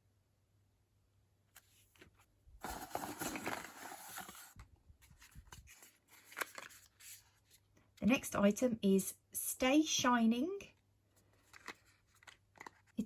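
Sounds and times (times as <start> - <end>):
packaging rustling: 2.6 - 4.6, 5.2 - 7.3, 11.3 - 13.0.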